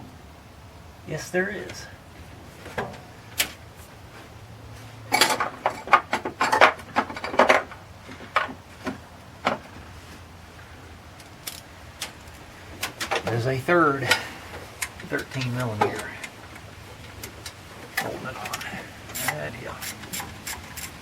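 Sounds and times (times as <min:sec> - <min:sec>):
metal hand tools clinking: 0:18.5 - 0:21.0.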